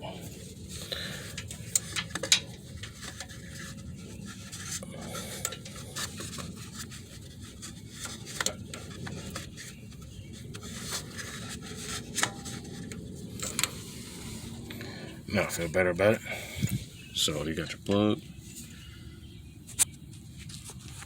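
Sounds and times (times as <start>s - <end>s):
hands clicking and rubbing wire: 1.2s - 4.8s, 5.4s - 13.9s
steady low rumble: 8.8s - 20.4s.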